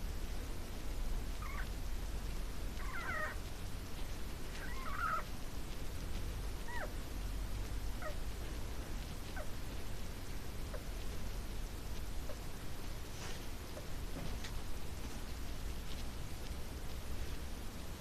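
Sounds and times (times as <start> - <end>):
low hum and hiss: 0.0 - 18.0
hamster squeaking: 1.3 - 1.8, 2.8 - 3.4, 4.5 - 5.3, 6.6 - 7.0, 8.0 - 8.2.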